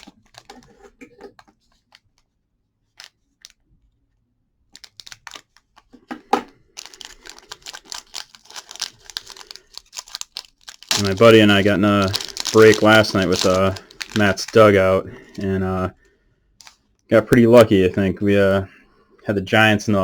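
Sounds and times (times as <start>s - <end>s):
foil wrapper tearing and crinkling: 4.8s - 5.9s, 6.8s - 15.5s.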